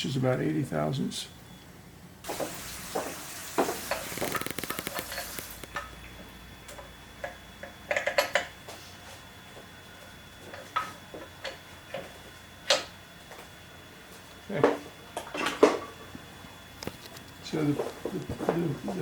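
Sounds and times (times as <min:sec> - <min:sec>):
hiss: 0:02.2 - 0:05.7.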